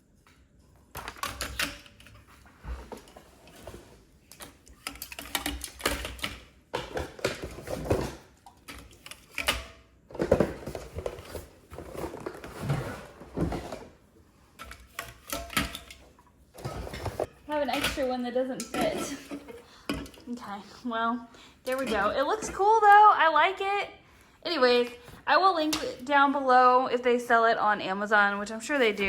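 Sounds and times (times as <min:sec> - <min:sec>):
aluminium cans clacking: 0:14.6 - 0:20.4, 0:21.7 - 0:22.6.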